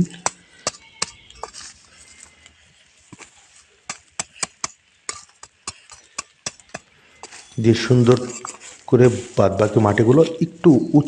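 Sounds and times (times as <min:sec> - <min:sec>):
soil clods breaking up: 0:00.0 - 0:11.0
sharp clicks and light taps: 0:03.9 - 0:07.4.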